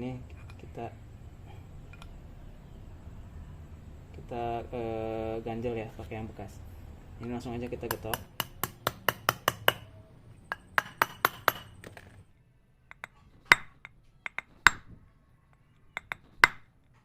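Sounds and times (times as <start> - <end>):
hard metal strikes: 7.8 - 11.9, 12.9 - 15.0
metal-on-metal tapping: 7.8 - 12.2, 12.9 - 17.0.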